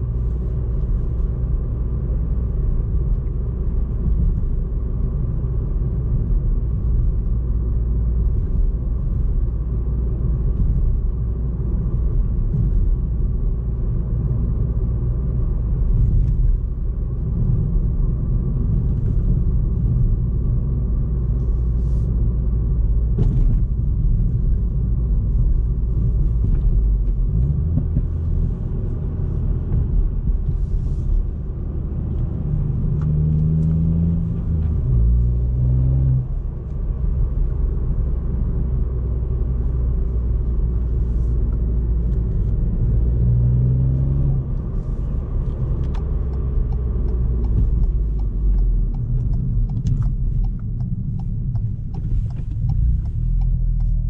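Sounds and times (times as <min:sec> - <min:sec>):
car engine low rumble: 0:00.0 - 0:54.0.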